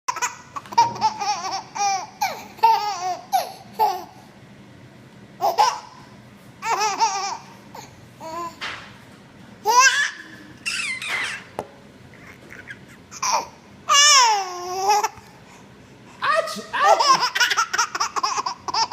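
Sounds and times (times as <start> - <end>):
baby laughing: 0.1 - 4.1, 5.4 - 6.0, 6.6 - 8.6, 9.6 - 15.2, 16.7 - 18.9.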